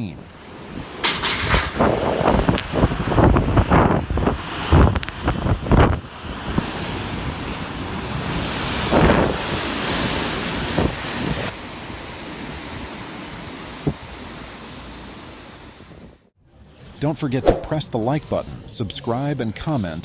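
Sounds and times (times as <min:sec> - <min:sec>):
hail and wind roaring: 0:00.2 - 0:16.2
sharp knocks: 0:01.0 - 0:01.8.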